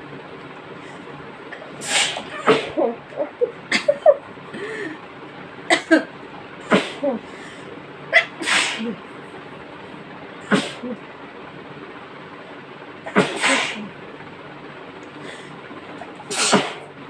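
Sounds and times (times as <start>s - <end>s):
woman sneezing: 1.8s - 3.0s, 6.7s - 7.2s, 8.2s - 9.0s, 10.5s - 11.0s, 13.1s - 13.9s, 16.3s - 16.9s.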